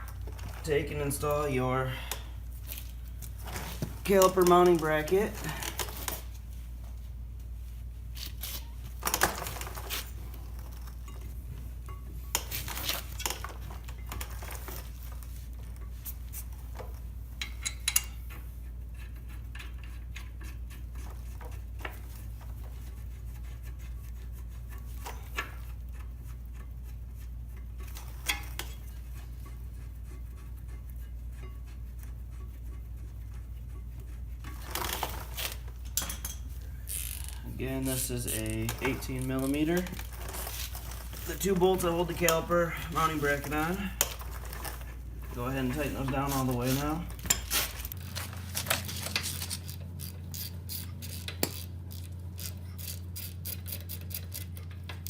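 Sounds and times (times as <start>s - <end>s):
low steady hum: 0.0s - 55.0s.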